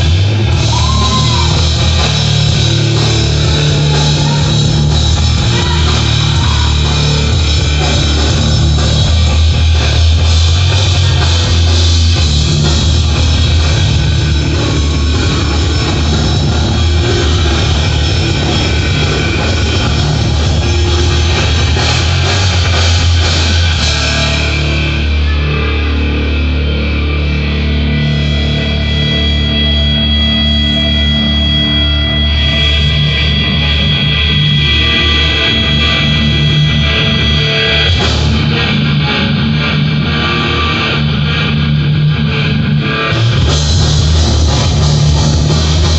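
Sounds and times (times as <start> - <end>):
cymbal-heavy drumming: 0.0 - 25.2, 43.1 - 45.9
rock guitar: 0.0 - 45.9.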